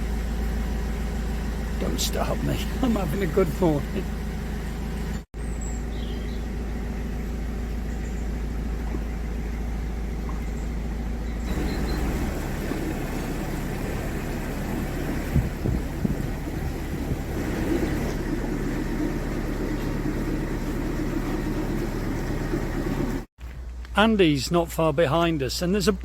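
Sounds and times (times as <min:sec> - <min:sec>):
diesel engine idling: 0:00.0 - 0:25.9.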